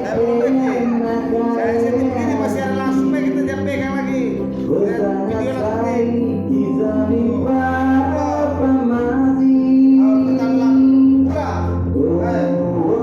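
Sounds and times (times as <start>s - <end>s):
musical accompaniment: 0.0s - 13.0s
person singing: 0.0s - 13.0s.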